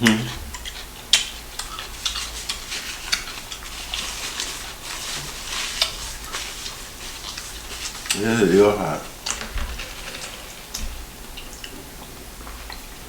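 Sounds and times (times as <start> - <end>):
wet chewing and lip-smacking: 0.0 - 8.2.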